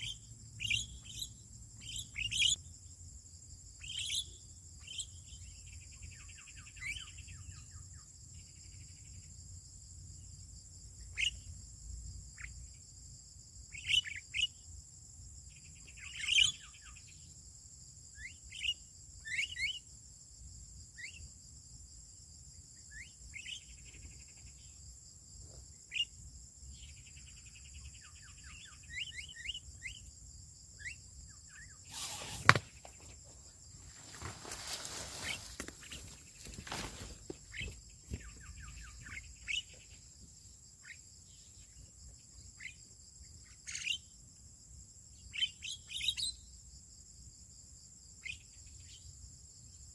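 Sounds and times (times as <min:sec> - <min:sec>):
rapid buzzy bird trills: 0:00.0 - 0:02.7, 0:03.7 - 0:09.3, 0:11.0 - 0:11.6, 0:13.7 - 0:14.6, 0:15.5 - 0:17.4, 0:18.1 - 0:20.0, 0:22.8 - 0:24.8, 0:25.7 - 0:40.2, 0:40.8 - 0:44.1
songbirds chirping and whistling: 0:00.0 - 0:02.7, 0:03.8 - 0:09.2, 0:11.0 - 0:11.6, 0:13.7 - 0:14.6, 0:15.5 - 0:17.3, 0:18.2 - 0:19.9, 0:22.8 - 0:24.8, 0:25.8 - 0:30.2, 0:30.8 - 0:44.1, 0:45.2 - 0:46.5
steady high hiss: 0:31.8 - 0:37.0.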